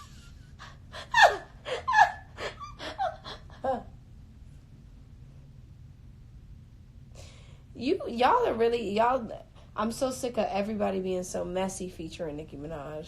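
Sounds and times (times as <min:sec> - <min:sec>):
woman laughing: 0:00.0 - 0:04.0.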